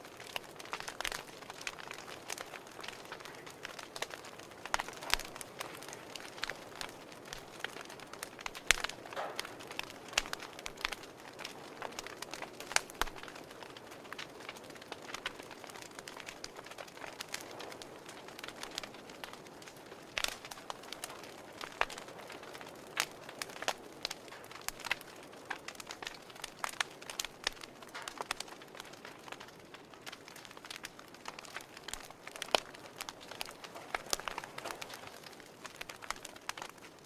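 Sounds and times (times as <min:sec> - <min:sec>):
wood fire crackling: 0:00.0 - 0:37.0.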